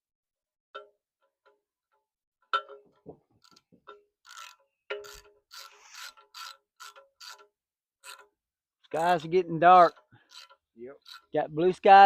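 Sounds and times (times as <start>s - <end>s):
scraping rasps: 3.3s - 12.0s.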